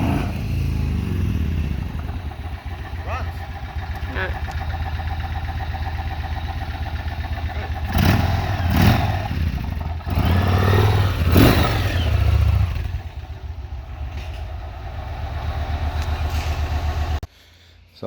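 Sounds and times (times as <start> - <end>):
motorcycle engine revving: 0.0 - 17.3.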